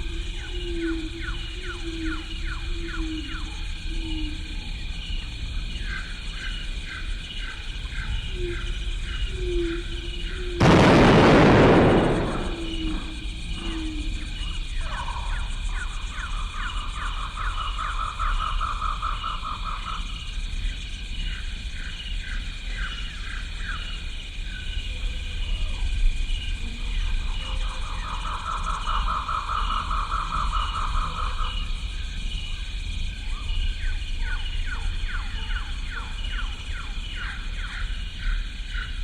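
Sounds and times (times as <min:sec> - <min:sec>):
low rumble: 0:10.6 - 0:13.5
high insect drone: 0:11.6 - 0:39.0.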